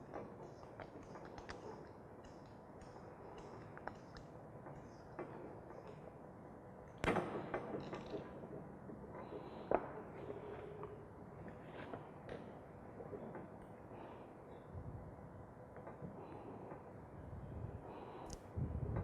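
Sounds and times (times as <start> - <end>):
small clicks and taps: 0.1 - 6.1.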